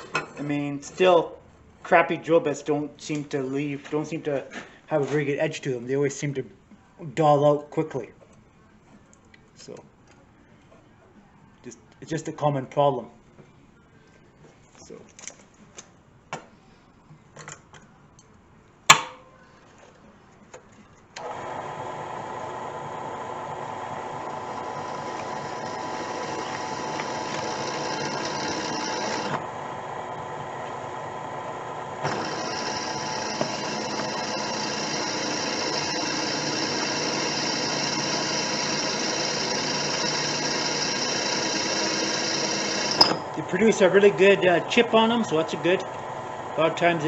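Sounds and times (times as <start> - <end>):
drill press running: 21.2 - 47.0
drill bit cutting metal: 22.4 - 29.6, 32.0 - 46.0.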